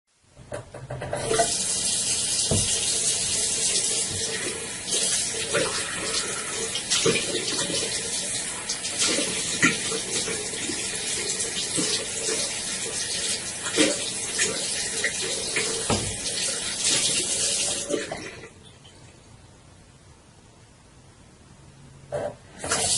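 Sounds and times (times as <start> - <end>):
tap water running into sink: 0.8 - 18.3
faint steady hiss: 1.2 - 22.9.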